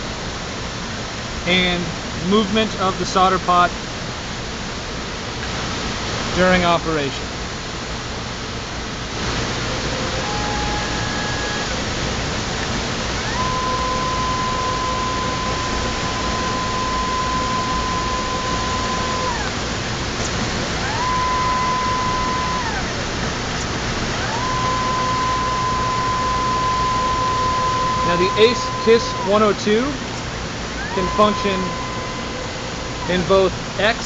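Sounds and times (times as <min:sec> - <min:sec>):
stepper motor whine: 0:09.1 - 0:34.0.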